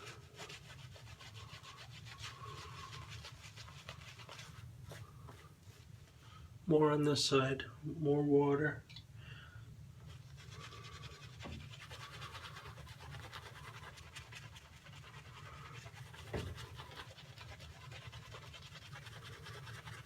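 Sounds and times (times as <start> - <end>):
shaving brush swishing on skin: 0.0 - 5.1, 10.2 - 20.0.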